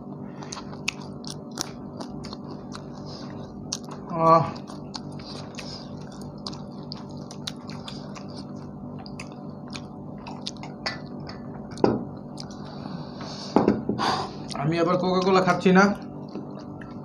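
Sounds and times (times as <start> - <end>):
people chewing food: 0.0 - 17.0
steady low hum: 0.0 - 17.0
wet mouth clicks and smacks: 4.6 - 11.8.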